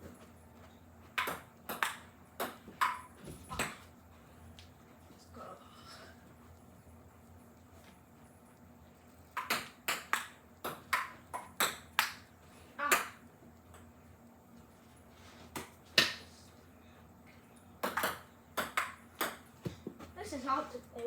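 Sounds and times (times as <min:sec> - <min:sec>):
ball tapping off paddles and table: 0:01.0 - 0:03.9, 0:09.3 - 0:13.9, 0:17.8 - 0:20.1.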